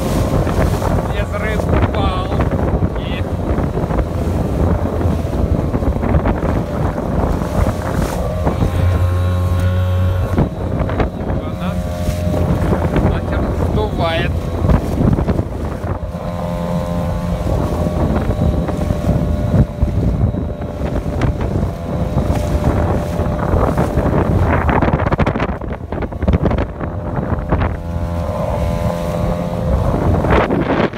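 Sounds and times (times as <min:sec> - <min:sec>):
outboard motor running: 0:00.0 - 0:30.9
water slapping against boat: 0:00.0 - 0:30.9
wind buffeting microphone: 0:00.0 - 0:30.9.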